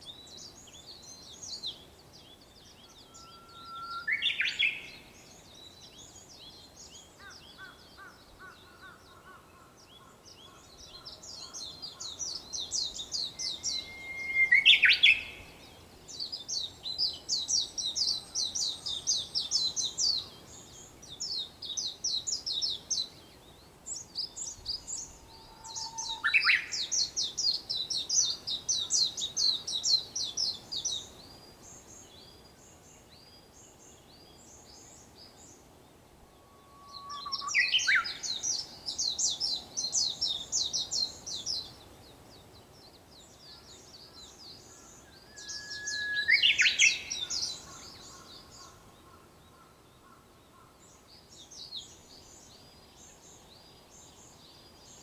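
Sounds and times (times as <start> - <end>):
bird singing whistled song: 2.7 - 5.0, 12.6 - 15.7, 24.4 - 31.1, 36.4 - 41.7, 45.1 - 48.2.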